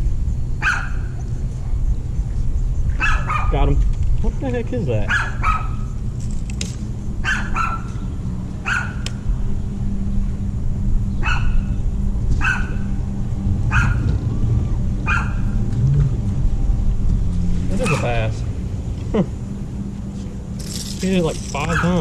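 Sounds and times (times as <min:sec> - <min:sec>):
low hum: 0:00.0 - 0:22.0
dog barking: 0:00.6 - 0:01.2, 0:03.0 - 0:03.6, 0:05.1 - 0:05.9, 0:07.2 - 0:08.0, 0:08.6 - 0:09.0, 0:11.2 - 0:11.7, 0:12.4 - 0:12.9, 0:13.7 - 0:14.1, 0:15.0 - 0:15.6, 0:17.8 - 0:18.1, 0:21.7 - 0:22.0.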